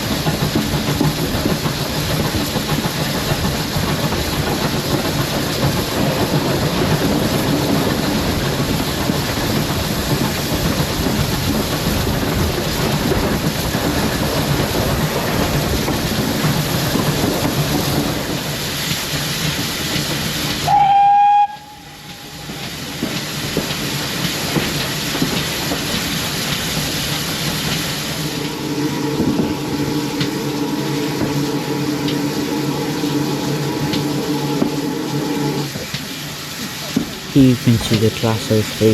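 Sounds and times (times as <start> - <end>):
railway coach rumbling on track: 0.0 - 37.4
steam locomotive whistle: 20.6 - 22.6.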